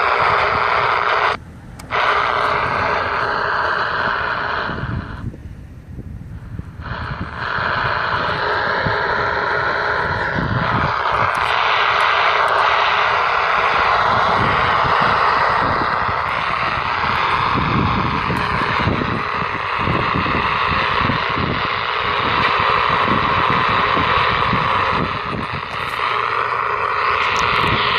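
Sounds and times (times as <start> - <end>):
walkie-talkie static hiss: 6.8 - 14.0, 15.3 - 27.9.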